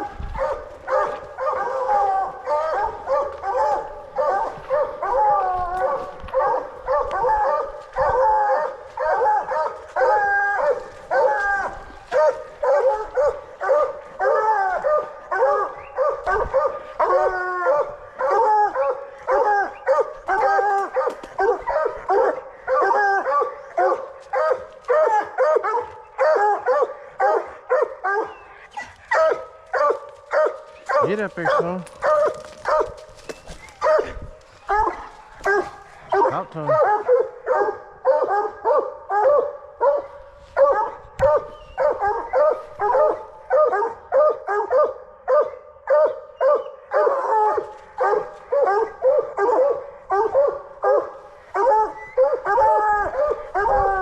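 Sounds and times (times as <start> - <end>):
hounds baying and barking: 0.0 - 54.0.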